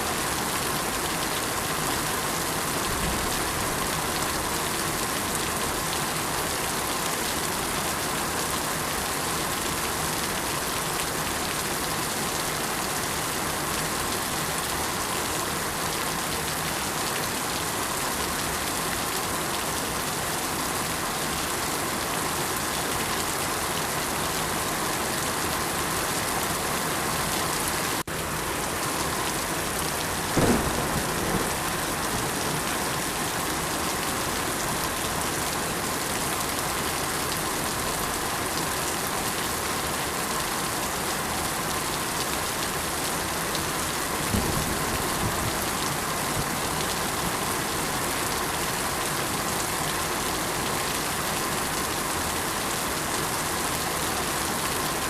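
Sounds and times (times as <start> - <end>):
steady rain falling: 0.0 - 55.0
louder thump: 30.4 - 31.6.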